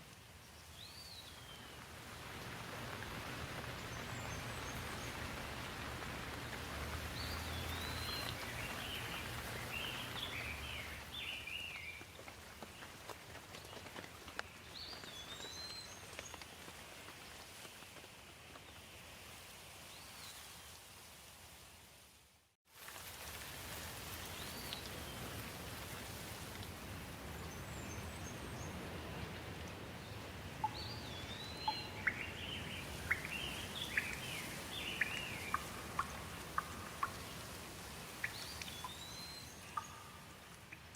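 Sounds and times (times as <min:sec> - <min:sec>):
steady rain falling: 0:00.0 - 0:40.9
birds chirping: 0:06.4 - 0:12.0, 0:30.6 - 0:37.4.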